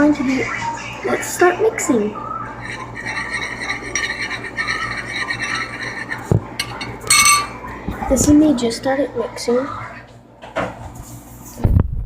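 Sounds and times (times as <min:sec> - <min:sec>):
utensil stirring and scraping: 0:02.5 - 0:07.5.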